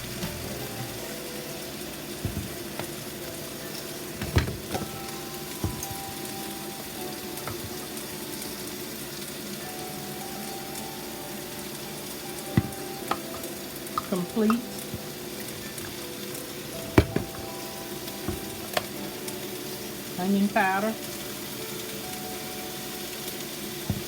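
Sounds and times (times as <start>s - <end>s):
pot of food simmering: 0.0s - 24.0s.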